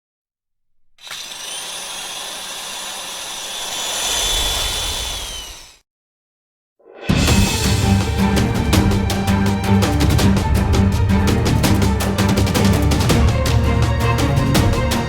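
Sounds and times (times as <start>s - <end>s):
small electric motor whining: 1.0s - 5.8s.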